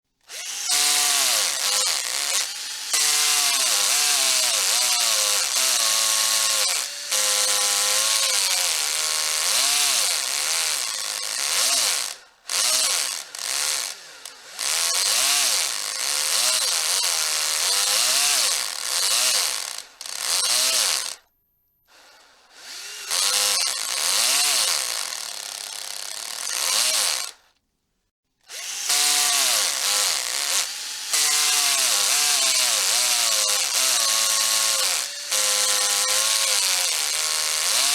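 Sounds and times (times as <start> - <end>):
hammer drill running: 0.3 - 21.2, 21.9 - 27.4, 28.5 - 37.9.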